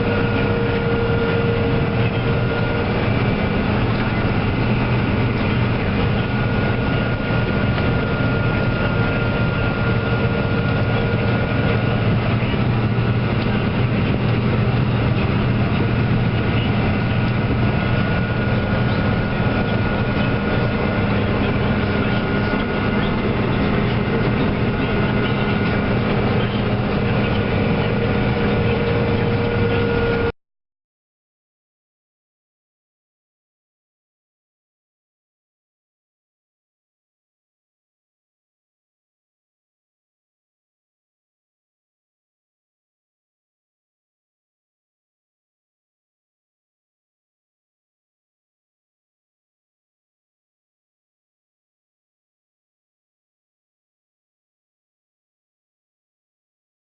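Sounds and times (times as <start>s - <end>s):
heavy machinery engine running: 0.0s - 30.3s.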